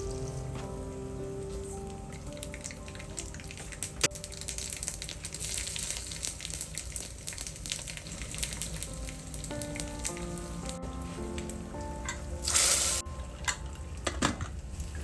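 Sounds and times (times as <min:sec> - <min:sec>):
soft background music: 0:00.0 - 0:15.0
food sizzling in a pan: 0:04.1 - 0:09.7, 0:12.4 - 0:13.0.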